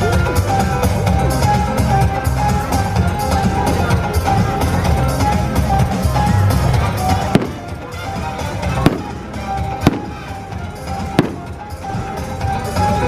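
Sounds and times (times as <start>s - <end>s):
music playing: 0.0s - 13.0s
fireworks bangs: 7.2s - 12.0s.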